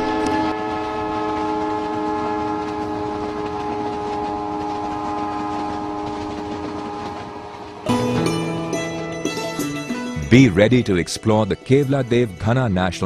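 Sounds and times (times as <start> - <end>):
train horn blast: 0.0 - 9.4
moving train running noise: 0.0 - 12.6.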